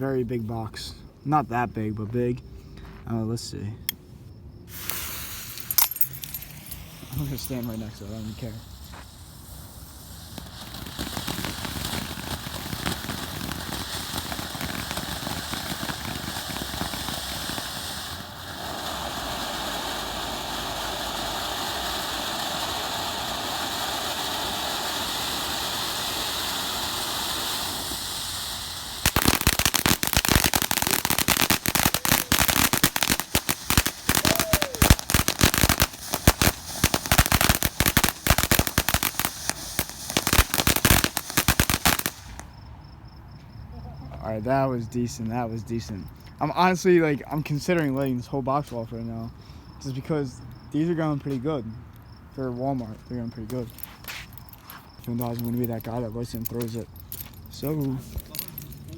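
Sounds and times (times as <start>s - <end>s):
firework fountain hissing: 4.7s - 42.6s
sparks crackling and popping: 4.7s - 42.6s.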